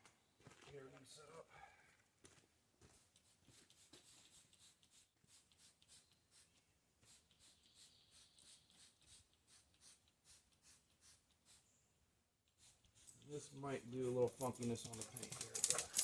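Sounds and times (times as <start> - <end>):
rustling: 12.6 - 16.0.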